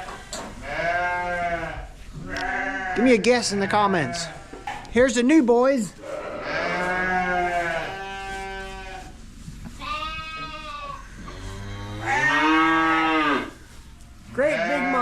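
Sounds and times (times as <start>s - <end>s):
sheep bleating: 0.6s - 4.6s, 6.0s - 9.1s, 9.8s - 11.4s, 12.0s - 13.5s, 14.4s - 15.0s.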